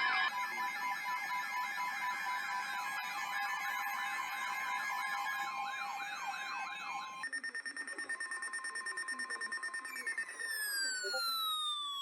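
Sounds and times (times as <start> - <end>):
electronic siren warbling: 10.3 - 12.0.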